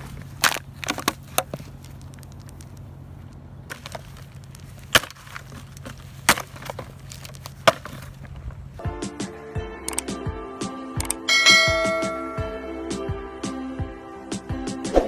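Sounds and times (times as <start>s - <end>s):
hard objects knocking and clacking: 3.7s - 8.6s.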